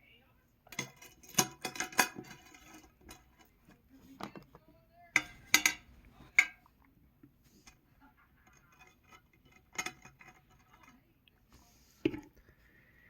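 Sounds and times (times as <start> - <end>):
metal band clinking: 5.2 - 6.6.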